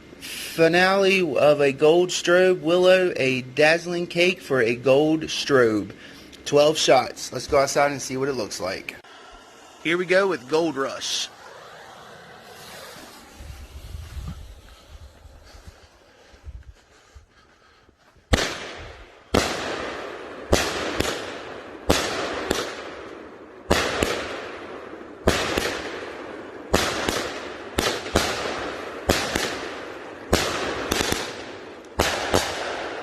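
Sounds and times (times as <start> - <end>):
firework sizzle: 0.0 - 2.8, 6.4 - 16.3, 23.6 - 33.0
firework bangs: 9.9 - 16.0, 18.3 - 33.0.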